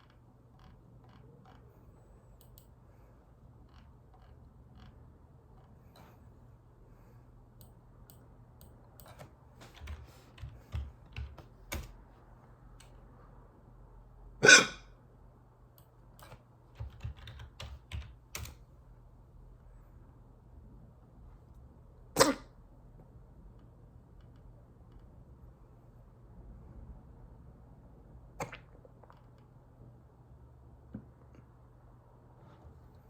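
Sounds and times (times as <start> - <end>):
person hiccuping: 14.4 - 14.9, 22.2 - 22.5.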